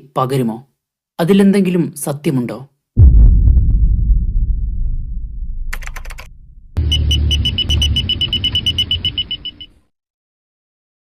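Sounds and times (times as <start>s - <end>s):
low rumble: 3.0s - 7.6s
rapid high beeping ticks: 6.8s - 9.8s.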